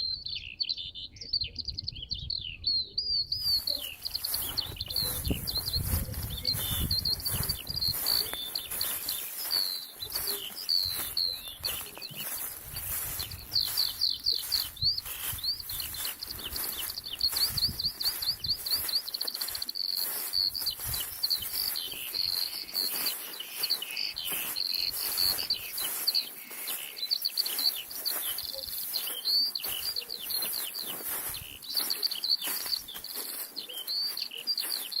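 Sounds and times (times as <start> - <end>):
songbirds singing and chirping: 0.0 - 35.0.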